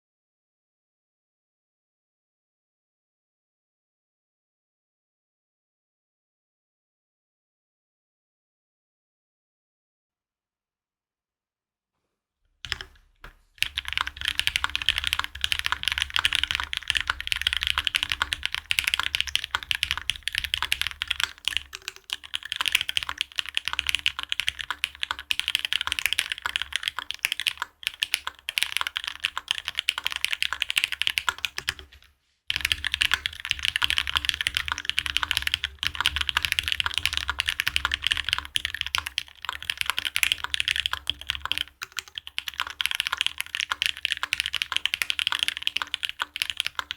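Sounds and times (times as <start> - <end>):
fast mechanical keyboard typing: 12.7 - 46.9.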